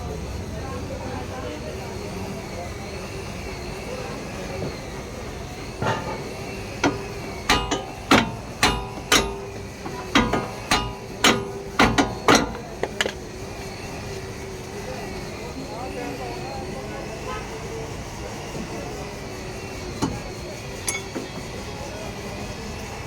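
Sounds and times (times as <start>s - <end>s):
hammer striking metal: 6.8s - 13.1s, 20.8s - 21.4s.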